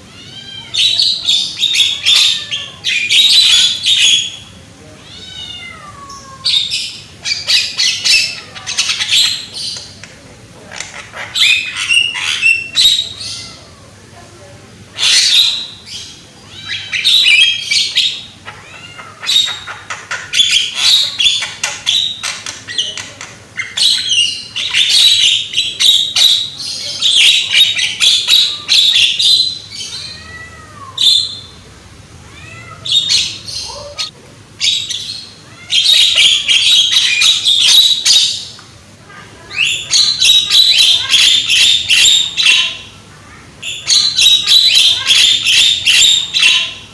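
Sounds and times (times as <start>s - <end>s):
bird chattering and whistling: 0.7s - 4.5s, 6.5s - 10.0s, 10.7s - 13.4s, 15.0s - 18.6s, 19.2s - 30.1s, 32.9s - 38.6s, 39.5s - 43.0s, 43.6s - 46.9s.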